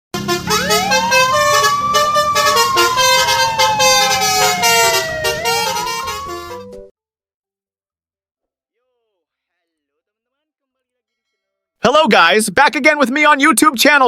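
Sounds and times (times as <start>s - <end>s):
siren wailing: 0.4s - 6.9s.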